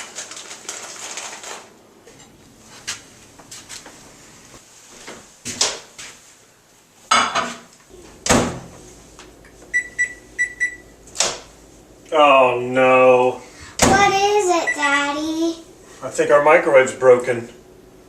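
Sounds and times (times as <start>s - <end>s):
kitchen clicks and knocks: 7.1s - 7.7s
microwave keypad beep: 9.7s - 11.0s, 14.6s - 14.9s.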